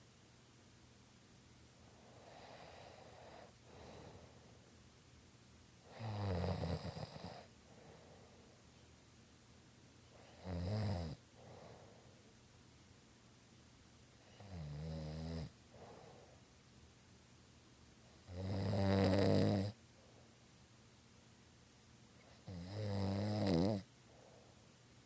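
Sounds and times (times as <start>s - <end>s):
soft breaths: 1.7s - 4.9s, 6.9s - 9.0s, 11.2s - 12.5s, 15.5s - 16.6s, 19.7s - 20.5s, 23.9s - 24.9s
loud snores: 5.9s - 7.5s, 10.4s - 11.2s, 14.4s - 15.5s, 18.3s - 19.8s, 22.5s - 23.9s.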